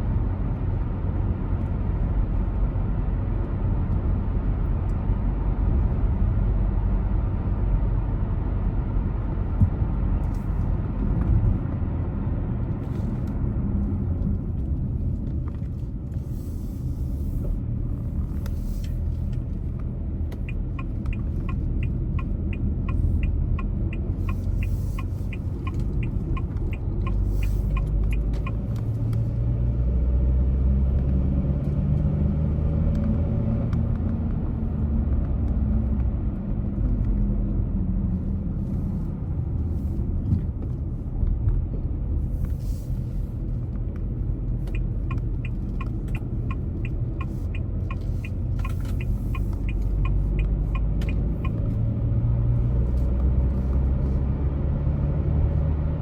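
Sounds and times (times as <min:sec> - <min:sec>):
car driving low rumble: 0:00.0 - 0:56.0
turn signal ticking: 0:18.1 - 0:29.3, 0:43.8 - 0:54.0.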